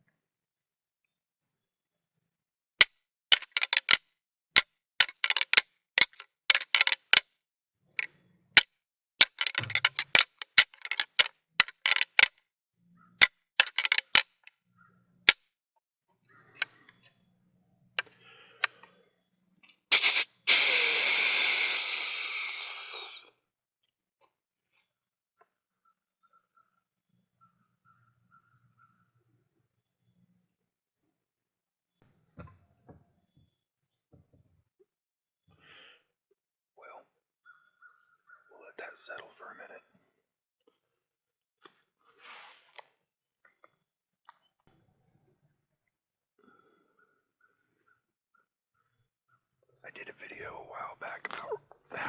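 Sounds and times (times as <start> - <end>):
mouth-made snort-wheeze call: 19.9 - 23.3.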